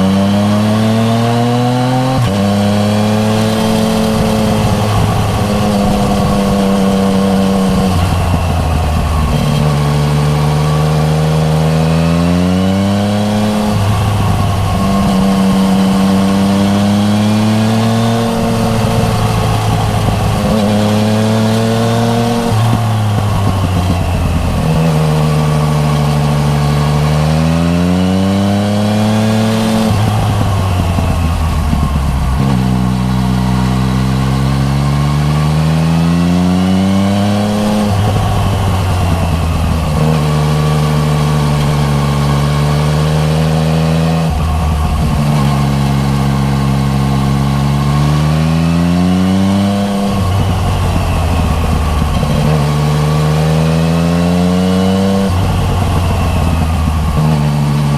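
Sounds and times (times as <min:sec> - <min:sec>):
motorcycle engine revving: 0:00.0 - 0:57.9.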